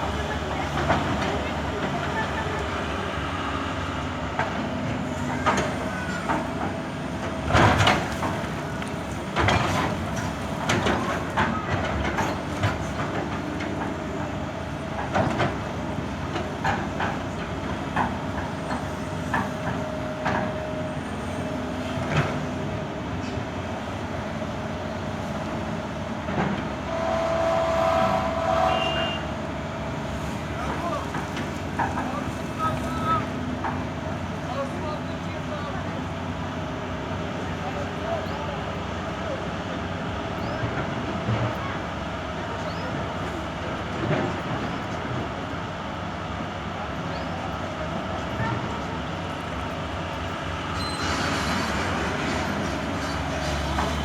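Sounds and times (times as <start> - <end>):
excavator diesel engine: 0.0 - 54.0
steady whine: 26.8 - 30.4.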